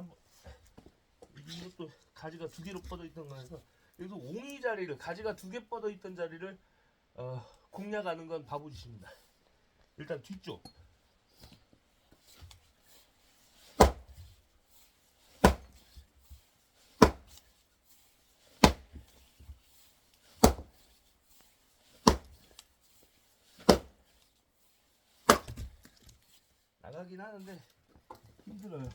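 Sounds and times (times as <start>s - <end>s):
axe striking log: 13.7s - 14.3s, 15.3s - 16.0s, 16.9s - 17.6s, 18.5s - 19.3s, 20.3s - 21.1s, 22.0s - 22.6s, 23.6s - 24.2s, 25.2s - 25.9s.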